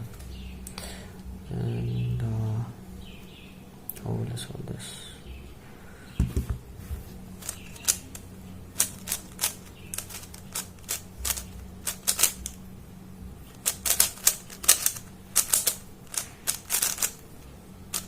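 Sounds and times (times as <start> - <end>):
sharp plastic clicks: 7.4 - 8.2, 8.8 - 12.6, 13.5 - 17.2.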